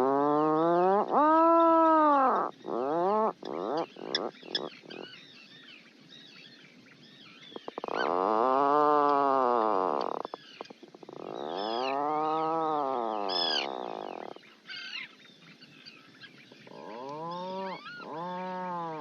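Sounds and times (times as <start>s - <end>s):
animal calls rising and falling: 7.7s - 10.3s, 11.2s - 15.0s, 16.7s - 19.0s.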